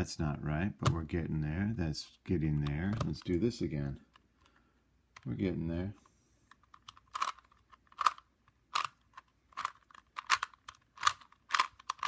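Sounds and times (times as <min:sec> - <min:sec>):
plastic puzzle cube clicks: 0:06.5 - 0:12.0.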